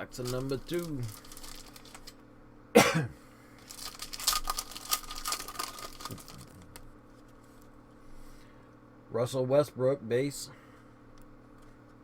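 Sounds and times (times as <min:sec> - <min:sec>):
plastic wrapper crinkling: 0:00.2 - 0:02.2, 0:03.6 - 0:06.9
plastic wrapping ripping: 0:00.2 - 0:02.2, 0:03.6 - 0:06.8.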